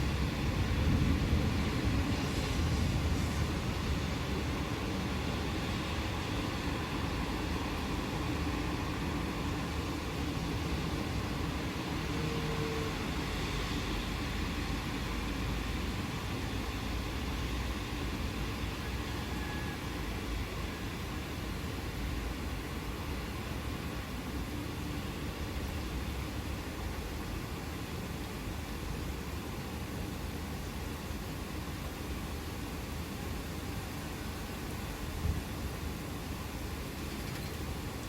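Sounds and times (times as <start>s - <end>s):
steady rainfall: 0.0s - 38.0s.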